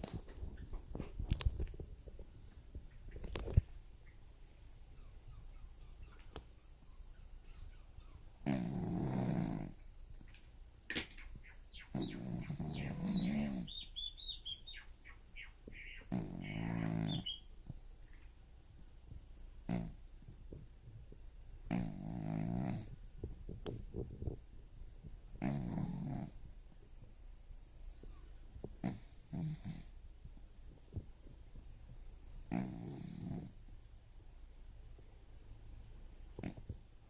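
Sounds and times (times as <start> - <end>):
cat snoring: 8.4 - 9.8, 11.9 - 13.8, 16.0 - 17.4, 19.7 - 20.0, 21.7 - 23.0, 25.4 - 26.4, 28.8 - 30.0, 32.2 - 33.6, 36.4 - 36.6.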